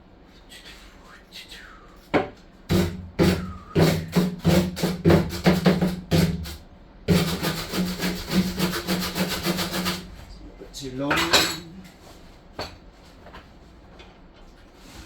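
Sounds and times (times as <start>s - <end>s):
steady low hum: 0.0s - 14.4s
hand tool scraping strokes: 7.1s - 10.1s.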